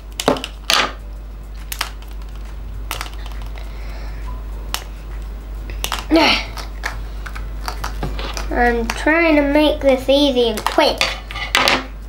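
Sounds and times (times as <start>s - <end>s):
plastic egg crackling scrape: 5.8s - 9.0s.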